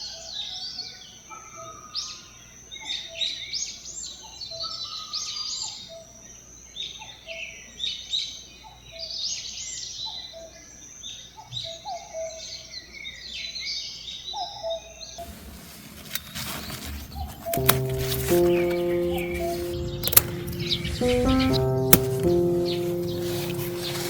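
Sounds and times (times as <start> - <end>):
clicks: 16.0 - 24.0.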